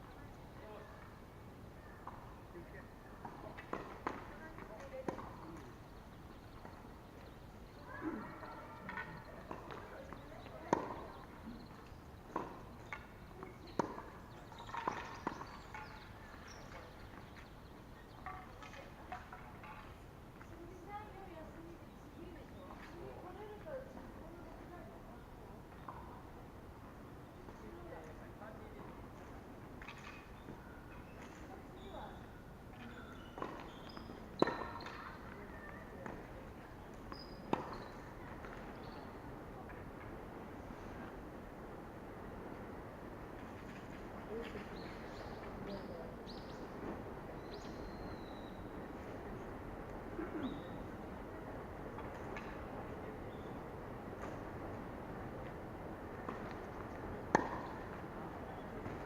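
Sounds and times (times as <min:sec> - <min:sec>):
faint distant voices: 0:00.0 - 0:59.0
tennis balls struck by rackets: 0:03.2 - 0:05.7, 0:08.8 - 0:11.6, 0:12.2 - 0:16.8, 0:33.2 - 0:35.4, 0:36.0 - 0:38.9, 0:56.1 - 0:59.0
tennis balls bouncing: 0:03.2 - 0:05.8, 0:08.8 - 0:16.8, 0:33.2 - 0:39.0, 0:56.1 - 0:59.0
racket hitting tennis ball: 0:57.3 - 0:58.1.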